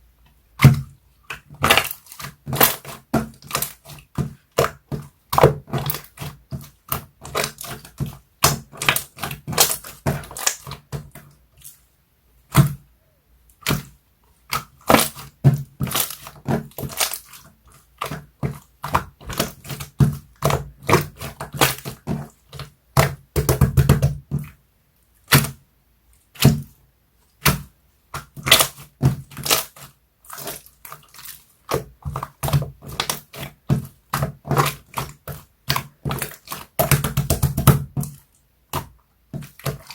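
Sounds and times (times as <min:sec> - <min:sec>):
slime squished by hand: 0:00.6 - 0:11.1, 0:27.4 - 0:39.9.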